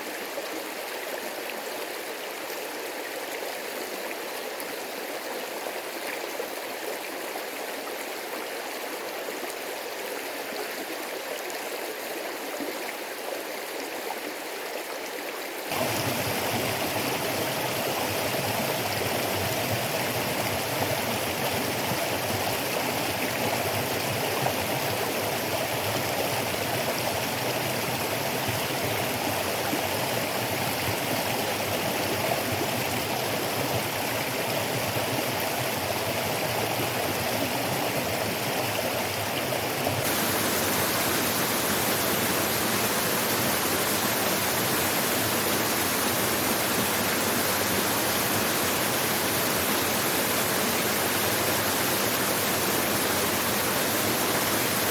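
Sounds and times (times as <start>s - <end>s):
waterfall and stream rushing: 15.7s - 54.9s.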